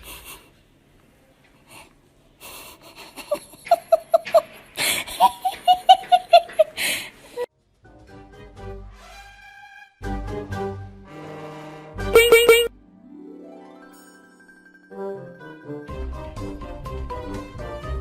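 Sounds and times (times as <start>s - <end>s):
person laughing: 2.4s - 7.4s.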